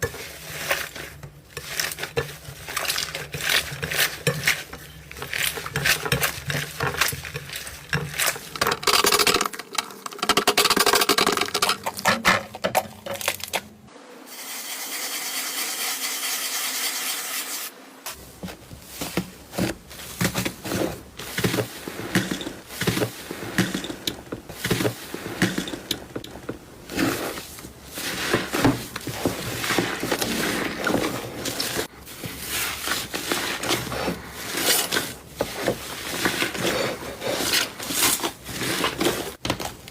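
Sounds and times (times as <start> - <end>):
slime crackling and squishing: 0.2 - 9.4.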